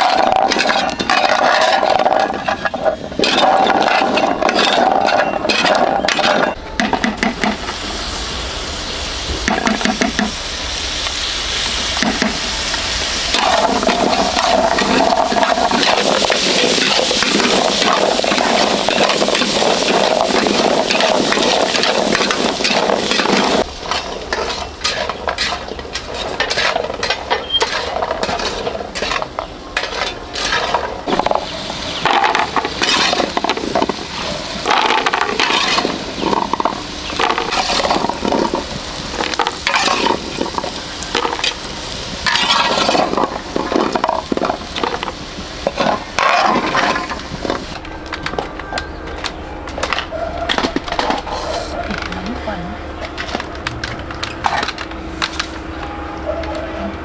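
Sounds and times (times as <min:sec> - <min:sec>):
utensil scraping pan: 0:00.0 - 0:07.7, 0:12.0 - 0:48.4
food sizzling in pan: 0:05.5 - 0:47.8.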